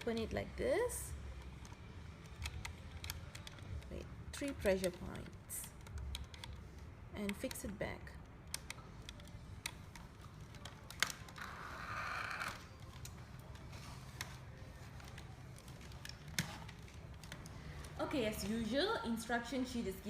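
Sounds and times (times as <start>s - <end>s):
plastic parts clicking into place: 8.4s - 11.6s.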